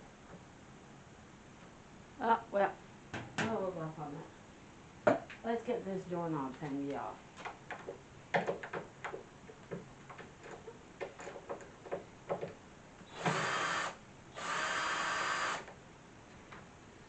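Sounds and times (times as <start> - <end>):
power drill bursts: 13.0 - 15.7.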